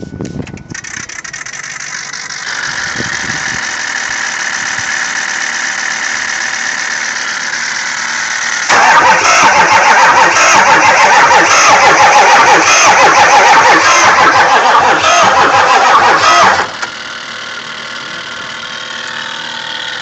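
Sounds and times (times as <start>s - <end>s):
truck whine with squealing tones: 0.0s - 3.9s, 8.6s - 16.9s.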